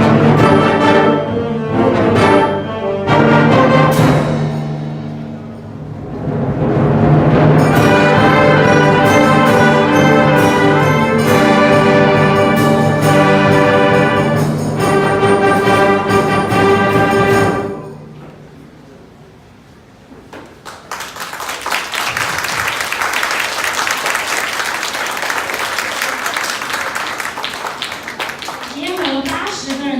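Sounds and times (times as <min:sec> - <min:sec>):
brass ensemble playing chords: 0:00.0 - 0:04.6, 0:06.6 - 0:18.1
audience applause: 0:20.5 - 0:29.9.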